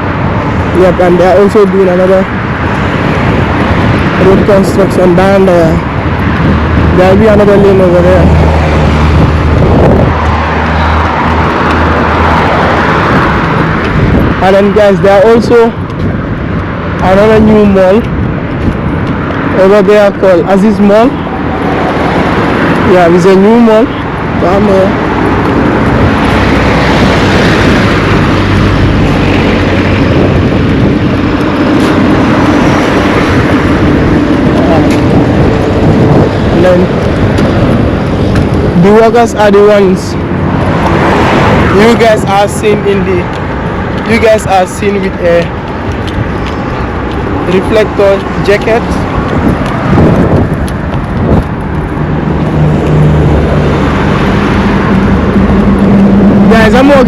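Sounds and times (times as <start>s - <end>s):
road noise: 0.0s - 57.0s
steady engine hum: 0.0s - 57.0s
vehicle engine running: 48.9s - 57.0s.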